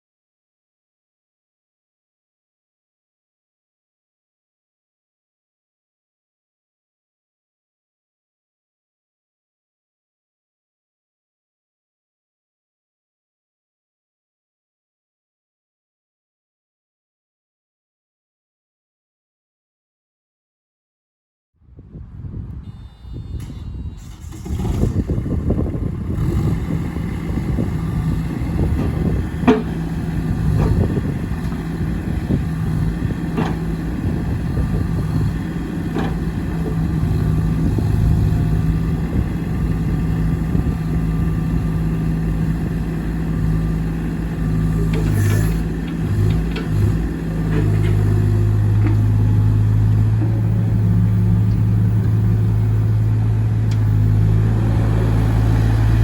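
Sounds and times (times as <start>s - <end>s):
diesel engine running: 23.9s - 56.0s.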